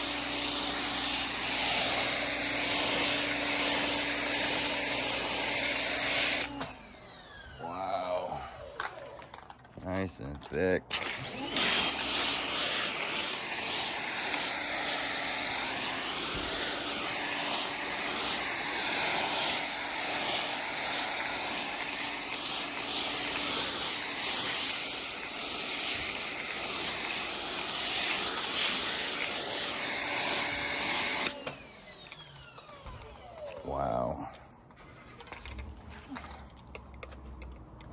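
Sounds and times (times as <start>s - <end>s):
pressure washer foam spray hiss: 0.0s - 6.5s, 11.2s - 31.4s.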